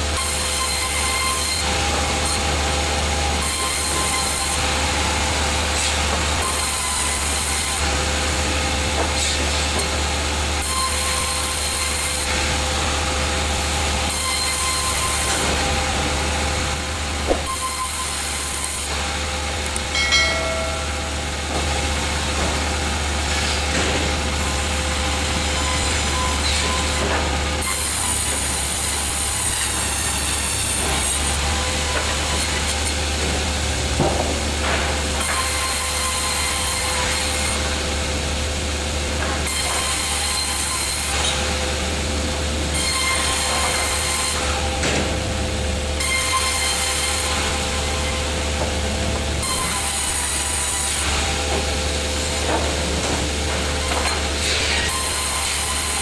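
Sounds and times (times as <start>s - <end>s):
sawmill motor drone: 0.0s - 56.0s
saw hissing through wood: 3.6s - 8.2s.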